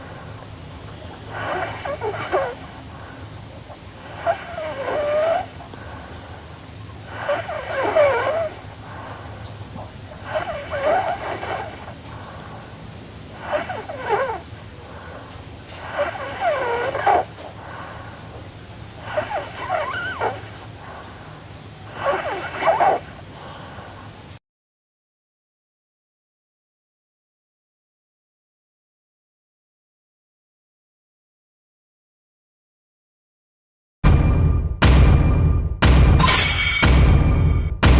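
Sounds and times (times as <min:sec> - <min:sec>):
girl snoring: 0:01.3 - 0:02.9, 0:04.0 - 0:05.7, 0:07.0 - 0:09.4, 0:10.1 - 0:18.0, 0:19.0 - 0:21.2, 0:21.9 - 0:24.3.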